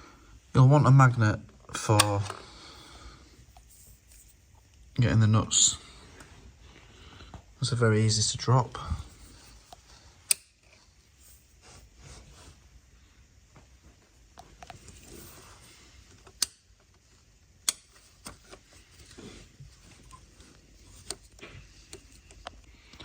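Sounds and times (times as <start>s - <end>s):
quiet rustling: 8.8s - 12.8s, 13.5s - 17.3s.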